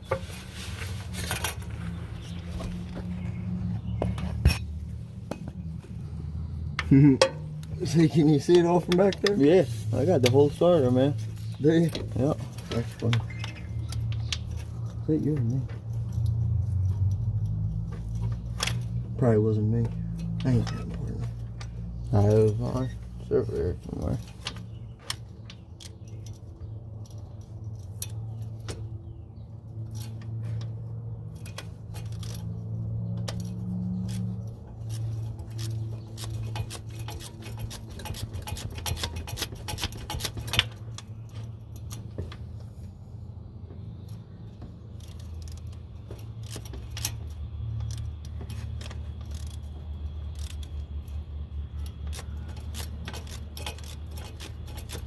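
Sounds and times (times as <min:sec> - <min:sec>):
ratchet clicking: 0:31.3 - 0:42.5, 0:44.0 - 0:55.0.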